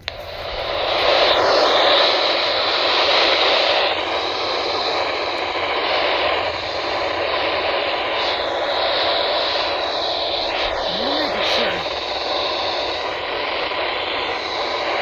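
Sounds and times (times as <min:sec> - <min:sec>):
radio static: 0:10.5 - 0:12.1.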